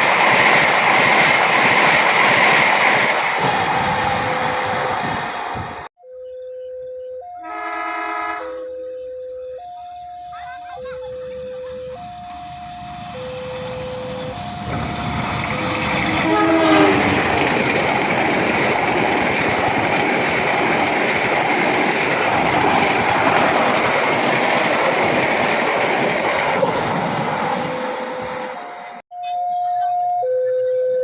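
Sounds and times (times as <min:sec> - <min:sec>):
train passing at speed: 0:00.0 - 0:05.9, 0:12.0 - 0:29.0
train horn blast: 0:07.4 - 0:08.6, 0:14.7 - 0:18.4.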